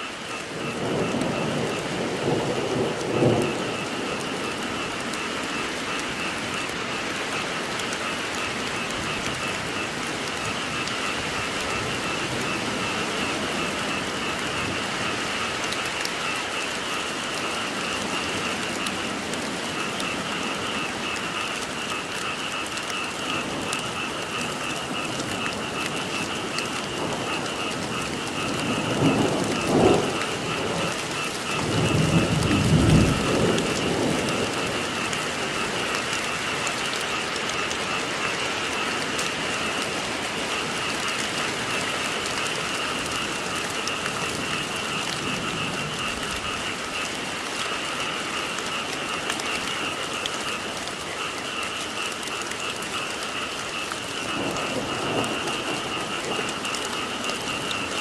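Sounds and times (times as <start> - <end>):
frogs croaking chorus: 0.0 - 58.0
steady rainfall: 0.0 - 58.0
low rumbles of thunder: 0.4 - 6.3, 23.2 - 36.6.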